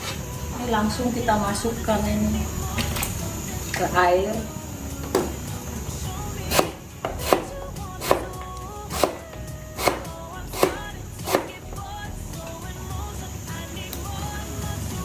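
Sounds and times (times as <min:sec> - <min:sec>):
knife chopping on cutting board: 0:06.5 - 0:08.3.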